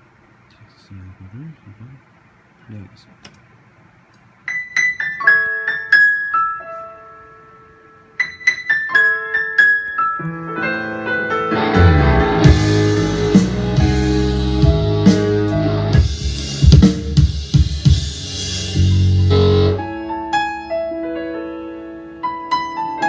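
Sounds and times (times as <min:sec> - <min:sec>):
keyboard single notes: 0:09.6 - 0:16.2
bass: 0:10.8 - 0:20.1
drum kit: 0:11.4 - 0:20.2.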